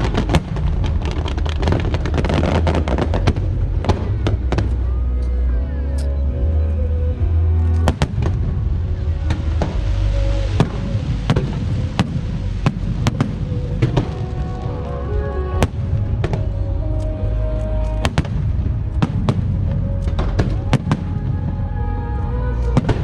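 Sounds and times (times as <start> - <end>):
fireworks bangs and cracks: 0.0 - 5.2, 7.8 - 16.7, 18.0 - 21.8, 22.7 - 23.0
music with heavy bass: 0.0 - 23.0.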